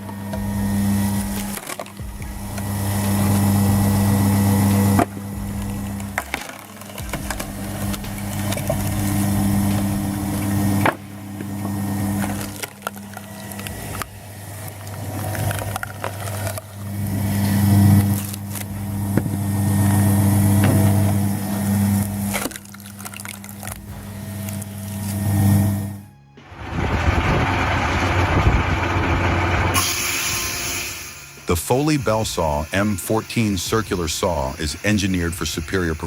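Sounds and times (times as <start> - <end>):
wood splitter motor hum: 0.0 - 36.0
wood cracking and splintering: 1.2 - 25.2.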